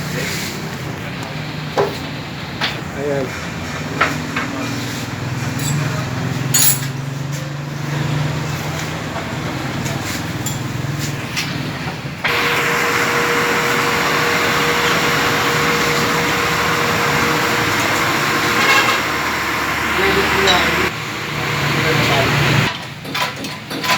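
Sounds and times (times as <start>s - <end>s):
metallic clinks of hand tools: 5.6s - 5.9s, 6.6s - 7.0s.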